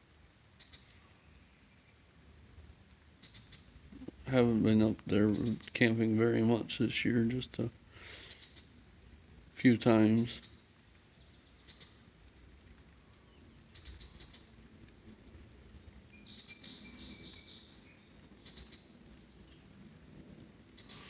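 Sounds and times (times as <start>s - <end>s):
light rain hiss: 0.0s - 21.0s
bird chirps: 10.4s - 14.6s, 15.8s - 19.6s, 20.8s - 21.0s.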